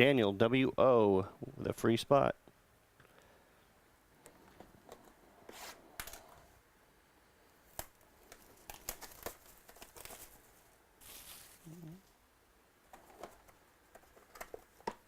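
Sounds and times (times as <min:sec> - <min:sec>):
card pack wrappers tearing: 0:07.7 - 0:11.9
cards being handled: 0:07.7 - 0:12.0.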